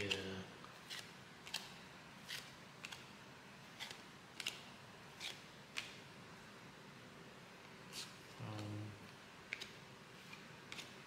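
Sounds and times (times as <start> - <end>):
cards sliding papery swishes: 0.8 - 3.1.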